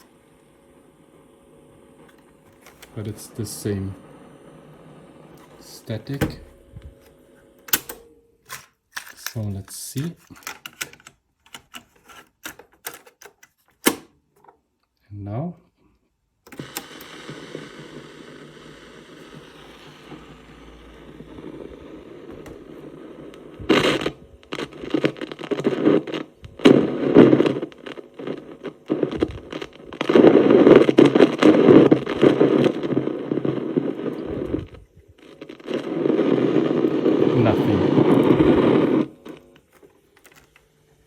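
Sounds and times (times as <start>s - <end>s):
loudspeaker static hiss and crackle: 0.0s - 13.2s, 16.4s - 41.0s.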